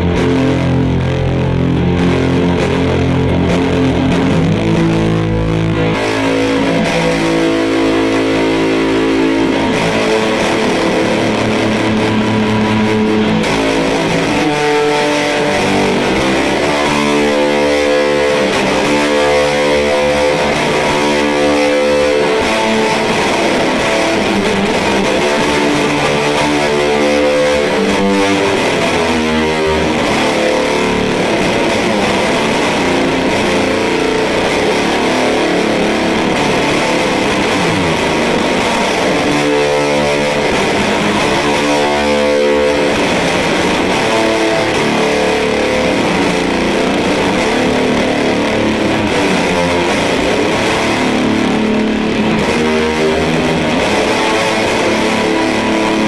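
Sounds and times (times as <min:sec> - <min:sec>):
distorted electric guitar chords: 0:00.0 - 0:56.0.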